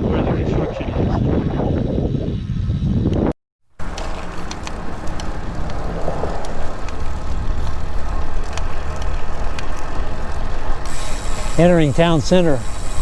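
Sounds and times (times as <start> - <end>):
wind noise: 0.0 - 3.3
bicycle road rumble: 2.2 - 13.0
light ticks: 3.9 - 9.9.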